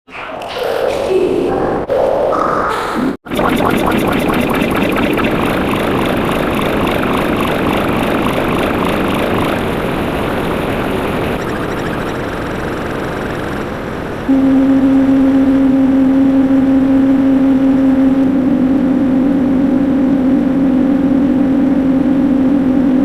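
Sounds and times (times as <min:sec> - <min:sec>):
loud engine-like sound effect: 0:03.2 - 0:18.8.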